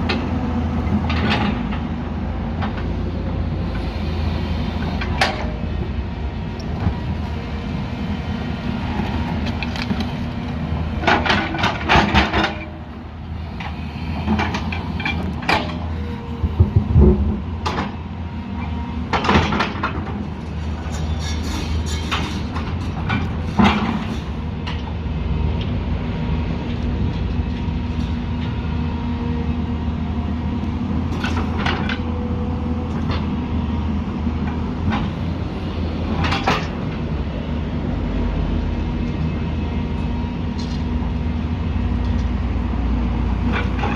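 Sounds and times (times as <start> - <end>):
excavator engine running: 0.0 - 43.9
metallic clanks and knocks: 11.0 - 12.8, 13.6 - 15.9, 20.8 - 24.8.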